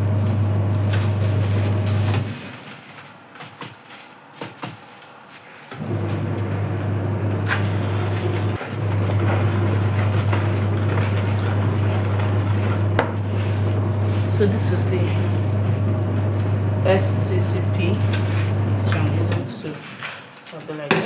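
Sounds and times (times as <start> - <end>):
washing machine motor humming: 0.0 - 2.4, 5.8 - 19.8.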